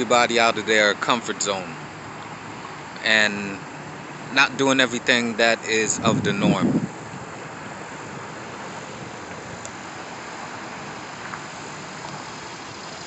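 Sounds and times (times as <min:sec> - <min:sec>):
steady mechanical noise: 0:00.0 - 0:13.0.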